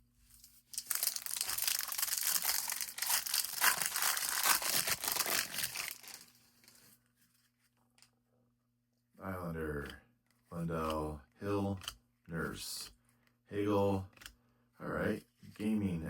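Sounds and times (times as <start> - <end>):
wrapper tearing and crinkling: 0.7 - 6.8.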